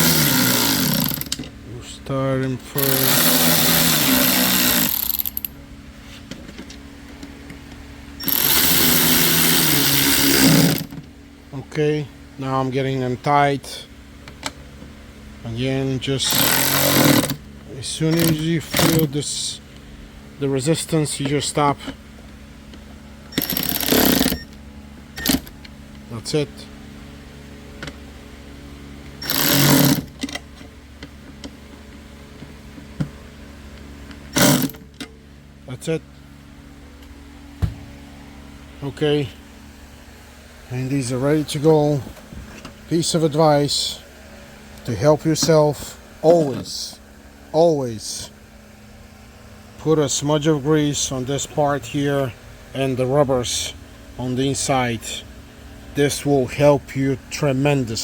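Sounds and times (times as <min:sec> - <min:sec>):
power driver running screws: 0:00.0 - 0:01.4, 0:02.8 - 0:05.5, 0:08.2 - 0:11.0, 0:16.3 - 0:17.4, 0:18.2 - 0:19.1, 0:23.4 - 0:24.4, 0:29.2 - 0:30.2, 0:34.3 - 0:34.8.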